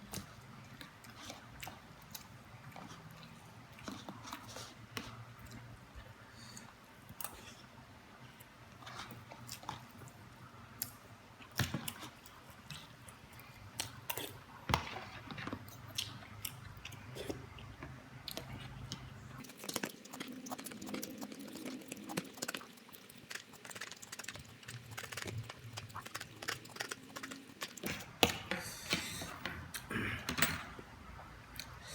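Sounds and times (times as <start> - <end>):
chewing with wet mouth noises: 0.0 - 7.6, 8.2 - 10.2, 15.4 - 28.2.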